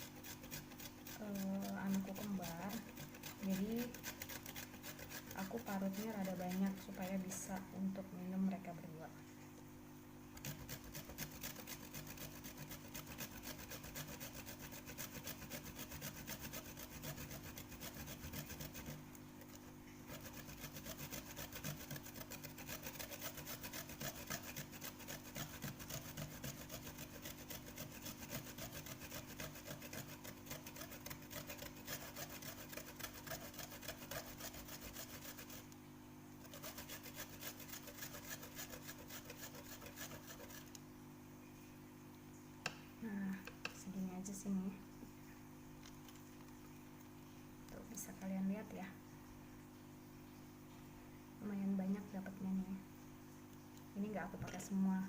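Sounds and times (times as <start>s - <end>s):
root rasping on a hand grater: 0.0s - 7.9s, 10.4s - 35.8s, 36.4s - 40.8s.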